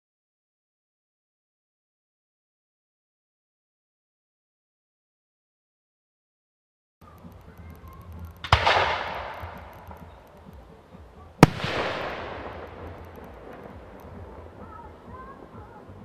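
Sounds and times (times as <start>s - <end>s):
fireworks bursting with crackle: 7.0s - 16.0s.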